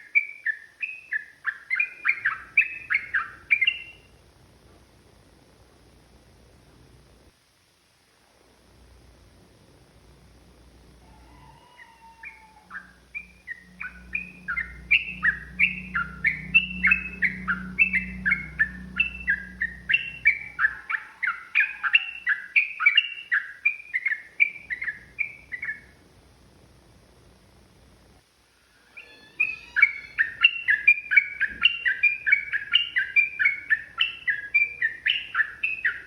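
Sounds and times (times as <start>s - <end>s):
bird singing falling chirps: 0.0s - 4.1s, 11.1s - 25.9s, 28.8s - 36.0s
low hum: 12.2s - 22.0s.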